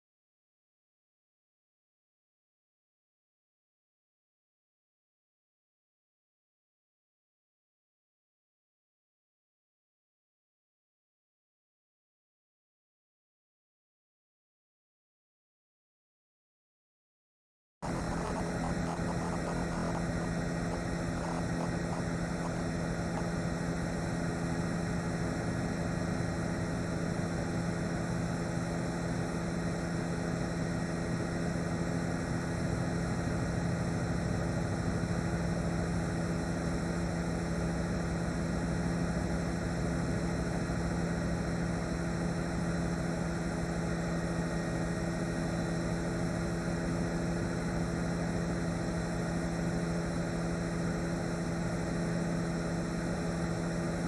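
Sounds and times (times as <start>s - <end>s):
helicopter engine and rotor drone: 17.8s - 54.0s.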